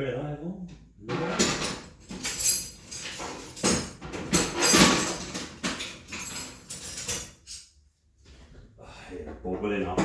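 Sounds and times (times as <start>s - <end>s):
objects scraping: 1.0s - 7.6s
hard objects knocking and clinking: 1.1s - 7.6s.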